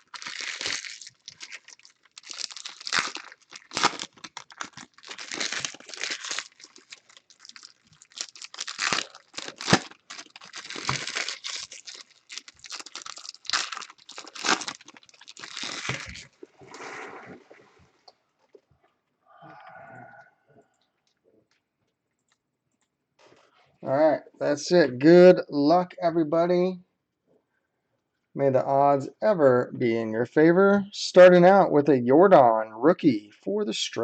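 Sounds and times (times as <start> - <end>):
wrappers tearing and crinkling: 0.0 - 16.5.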